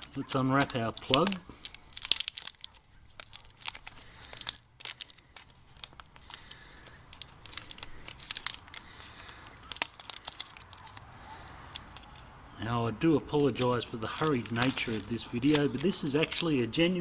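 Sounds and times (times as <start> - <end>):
plastic wrapper crinkling and tearing: 0.0 - 17.0.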